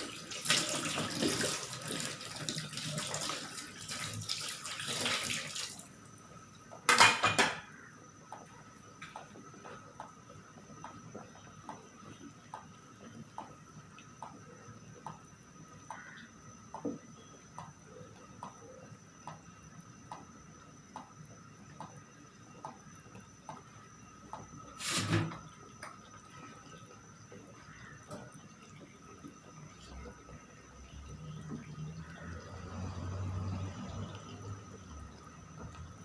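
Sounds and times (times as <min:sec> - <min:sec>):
curry bubbling in a pot: 0:07.8 - 0:36.0.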